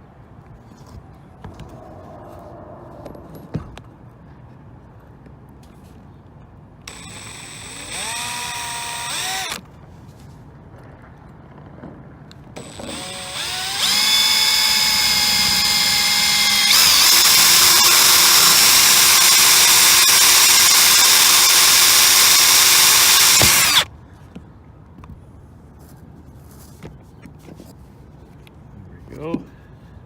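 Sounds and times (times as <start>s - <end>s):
electric drill whining: 6.9s - 9.6s, 12.6s - 23.9s.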